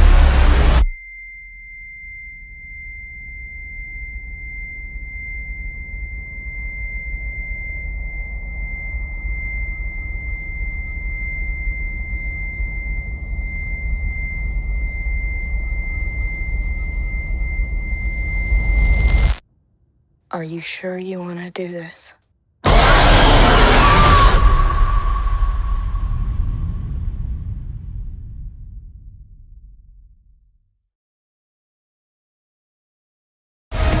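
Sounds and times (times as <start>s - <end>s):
low rumble: 0.0s - 1.0s, 1.6s - 20.1s, 23.2s - 30.6s
high-pitched ringing tone: 0.8s - 19.4s
loud trailer sound passage: 22.6s - 29.5s.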